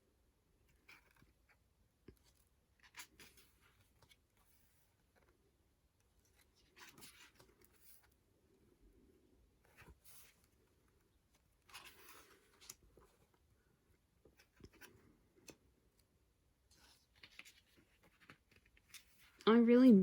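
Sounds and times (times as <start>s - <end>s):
photobook pages rustling: 0.8s - 5.4s, 6.0s - 8.2s, 9.6s - 13.6s, 14.2s - 19.4s.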